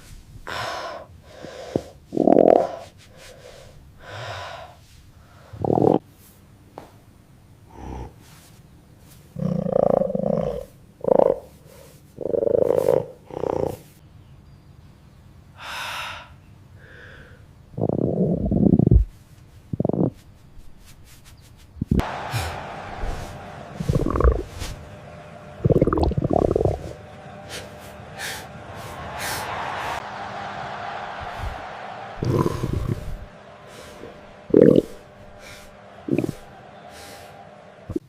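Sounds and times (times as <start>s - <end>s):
stomach growls and gurgles: 1.8s - 2.8s, 5.5s - 6.0s, 9.4s - 11.5s, 12.2s - 13.8s, 17.8s - 19.1s, 19.7s - 20.2s, 23.9s - 24.5s, 25.6s - 26.8s, 32.2s - 33.2s, 34.5s - 35.0s.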